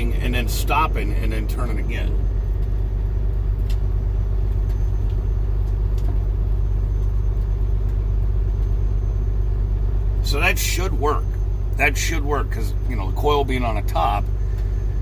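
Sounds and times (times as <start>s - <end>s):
low machine hum and rumble: 0.0s - 15.0s.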